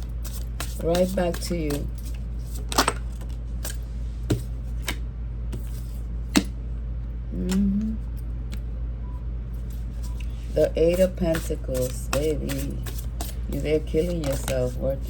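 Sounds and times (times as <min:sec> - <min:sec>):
steady low hum: 0:00.0 - 0:15.0
cards clicking on table: 0:00.3 - 0:05.0, 0:10.9 - 0:14.7
person humming: 0:07.3 - 0:08.1.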